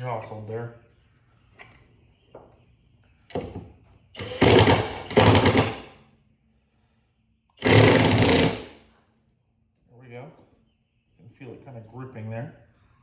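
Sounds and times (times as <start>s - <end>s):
small motor rattling buzz: 7.6s - 8.8s.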